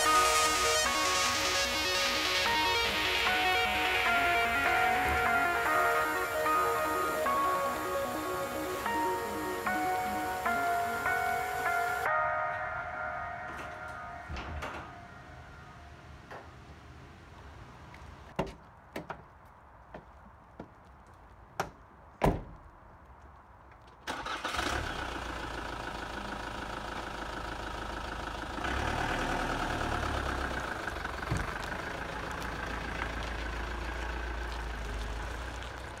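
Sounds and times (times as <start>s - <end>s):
engine running: 24.1s - 36.0s.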